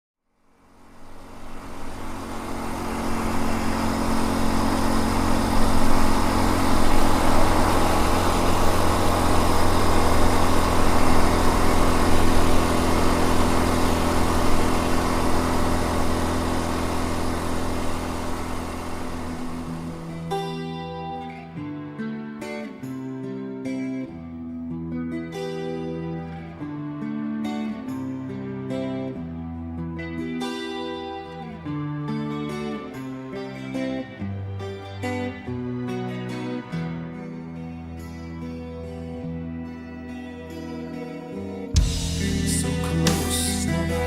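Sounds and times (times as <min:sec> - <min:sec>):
motor hum with whirring hiss: 0:00.8 - 0:20.2
plucked acoustic guitar: 0:01.5 - 0:44.0.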